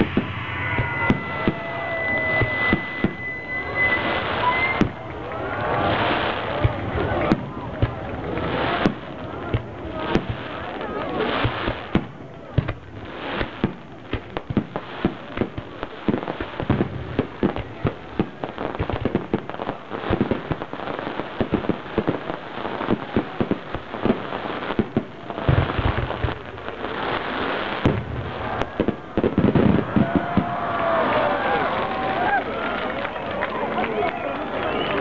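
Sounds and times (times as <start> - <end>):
firework boom: 0.0 - 10.4, 27.8 - 32.1
fireworks crackling and popping: 0.0 - 35.0.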